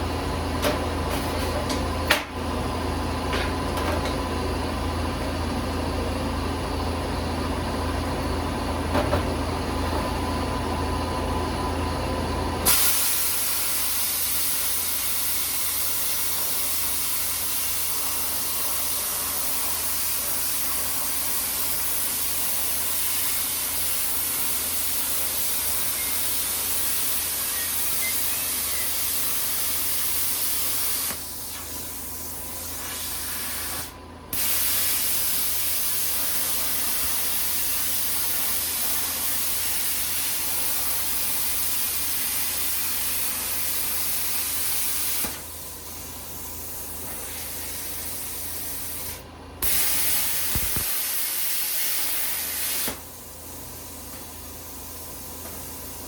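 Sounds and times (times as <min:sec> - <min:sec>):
compressed-air tool hissing: 0:12.7 - 0:54.0.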